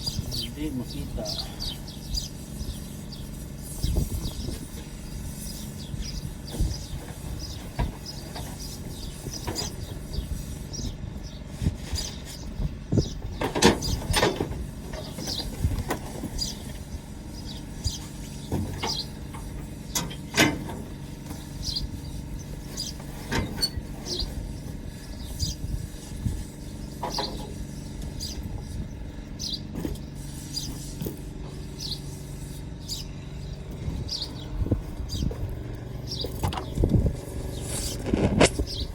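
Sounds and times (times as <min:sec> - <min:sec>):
birds chirping: 0:00.0 - 0:38.9
steady low hum: 0:00.0 - 0:38.9.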